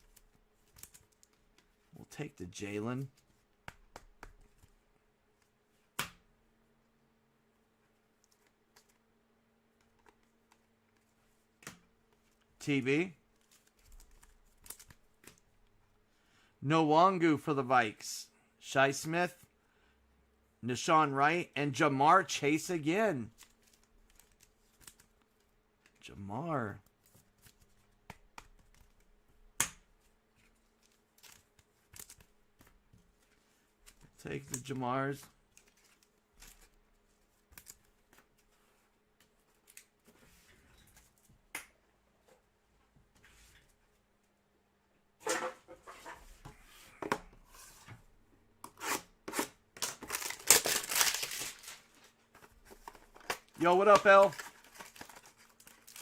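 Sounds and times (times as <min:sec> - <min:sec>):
trading cards clicking and rustling: 0:52.4 - 0:56.0.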